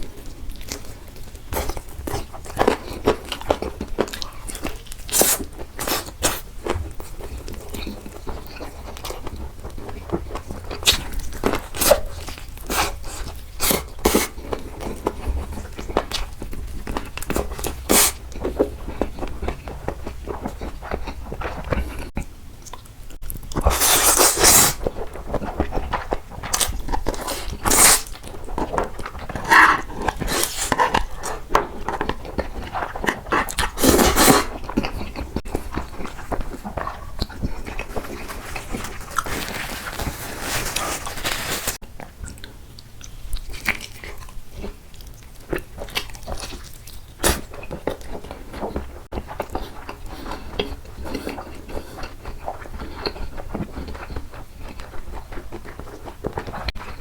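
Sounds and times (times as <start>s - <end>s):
wet chewing and mouth clicks: 0.2s - 40.1s, 42.0s - 57.0s
slurping or biting: 5.0s - 6.5s, 10.8s - 14.4s, 17.0s - 19.2s, 23.5s - 24.9s, 26.1s - 41.8s.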